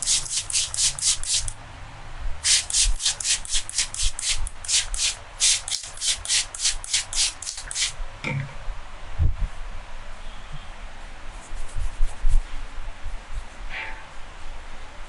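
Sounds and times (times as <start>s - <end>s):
hands rubbing briskly: 0.0s - 1.5s, 2.5s - 7.9s, 11.4s - 12.6s.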